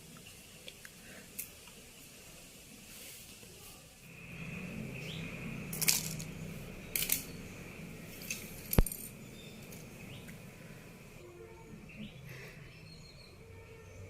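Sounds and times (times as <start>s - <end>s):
low background hum: 0.0s - 14.0s
small tools clicking: 6.9s - 7.3s.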